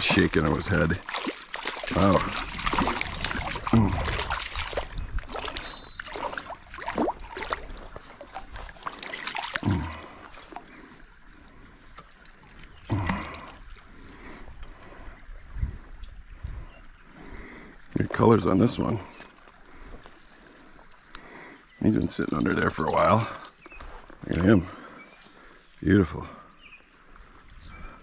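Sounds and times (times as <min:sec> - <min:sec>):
fish thrashing and splashing: 0:00.0 - 0:10.9
stream water trickling: 0:00.0 - 0:28.0.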